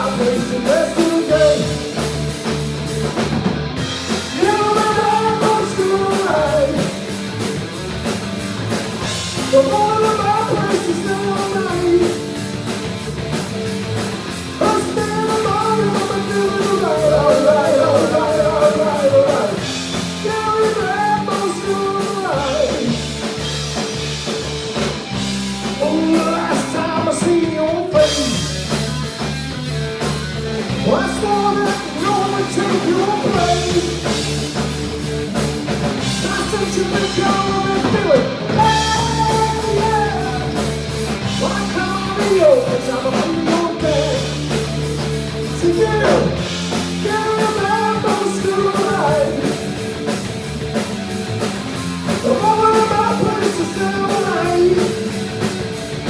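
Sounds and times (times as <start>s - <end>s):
person singing: 0.0s - 2.0s, 4.2s - 7.0s, 9.4s - 12.3s, 14.6s - 23.1s, 25.8s - 28.5s, 30.8s - 34.5s, 36.0s - 44.6s, 45.5s - 49.7s, 52.2s - 55.2s
live rock band playing: 0.0s - 56.0s.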